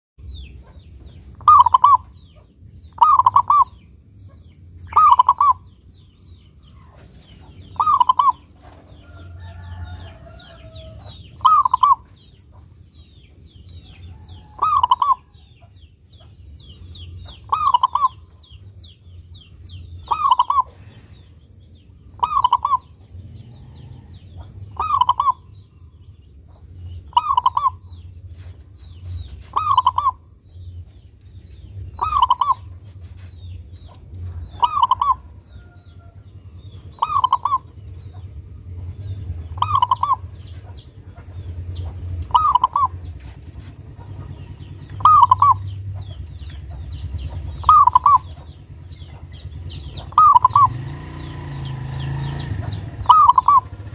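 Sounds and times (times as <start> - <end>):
small birds chirping: 0.2 - 53.9
dove cooing: 1.4 - 5.8, 6.6 - 12.4, 14.0 - 15.6, 17.2 - 18.4, 20.0 - 21.1, 22.0 - 25.8, 27.0 - 28.1, 29.2 - 30.4, 31.9 - 33.2, 33.8 - 53.9.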